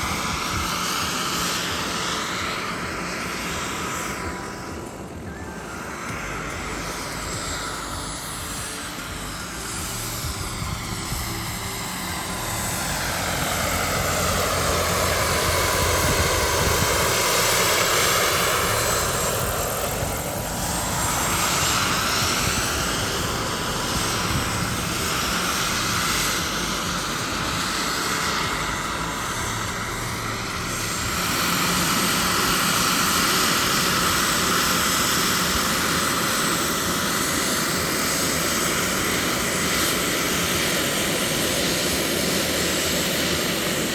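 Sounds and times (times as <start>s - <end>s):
model helicopter rotor whine: 0.0s - 43.9s.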